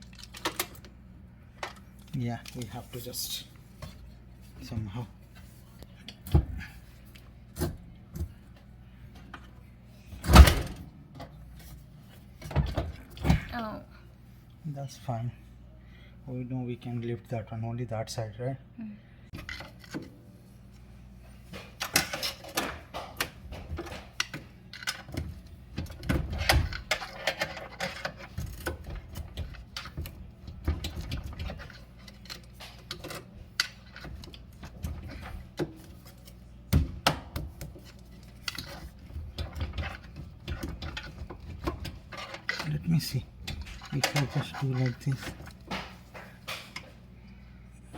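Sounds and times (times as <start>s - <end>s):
knocks clatters and scrapes: 21.5s - 36.5s, 37.5s - 47.0s.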